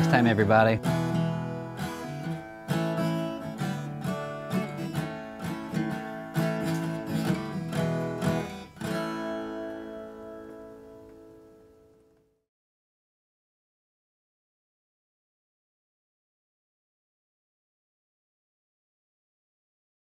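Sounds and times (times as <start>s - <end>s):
acoustic guitar strumming: 0.0s - 12.1s.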